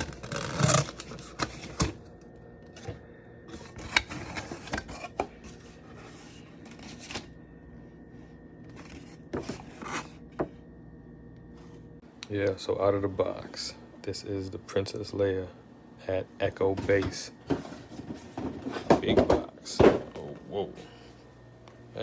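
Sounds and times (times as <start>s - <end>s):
packaging scraping and rubbing: 0.0s - 1.8s, 3.5s - 7.3s, 8.7s - 10.2s.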